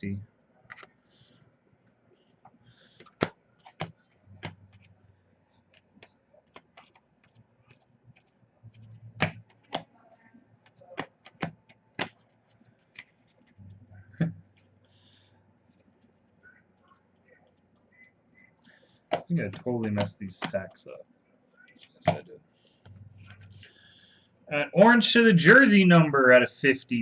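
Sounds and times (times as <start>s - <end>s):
cards clicking and tapping: 0.7s - 0.9s, 2.9s - 5.0s, 5.7s - 9.9s, 10.6s - 13.6s, 19.0s - 20.8s, 21.8s - 22.3s.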